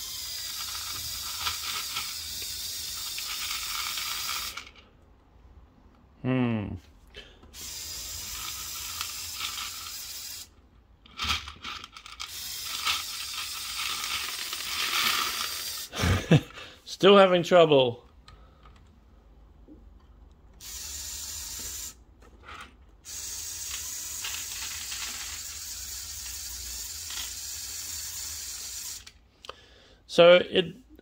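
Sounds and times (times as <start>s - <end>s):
small electric motors whirring: 0.0s - 4.7s, 7.6s - 10.5s, 11.2s - 15.9s, 20.6s - 22.0s, 23.0s - 29.2s.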